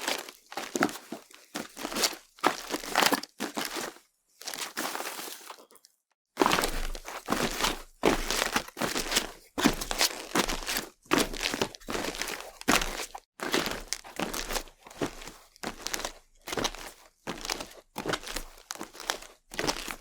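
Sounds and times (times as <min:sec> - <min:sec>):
footsteps crunching on gritty surface: 0:00.0 - 0:05.6, 0:06.4 - 0:20.0.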